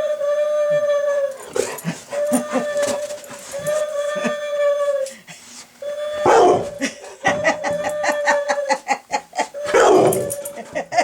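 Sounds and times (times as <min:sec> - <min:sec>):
dog barking: 0:06.3 - 0:06.6, 0:09.7 - 0:10.2.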